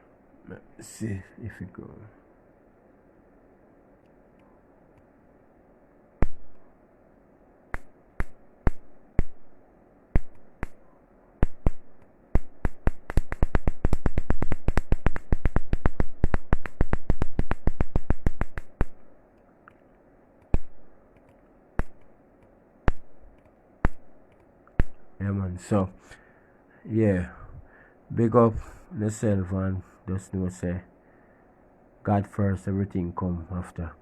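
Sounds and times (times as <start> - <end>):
sharp electrical clicks: 6.2 - 6.6, 7.7 - 9.5, 10.1 - 10.8, 11.4 - 25.2.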